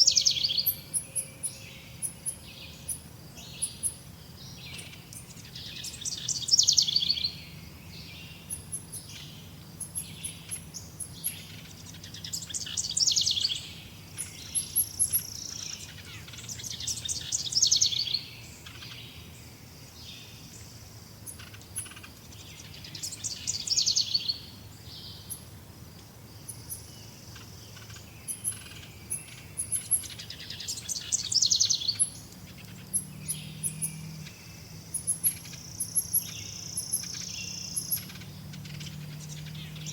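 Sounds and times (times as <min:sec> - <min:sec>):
thin high bird chirps: 0:08.4 - 0:19.0, 0:26.4 - 0:39.9.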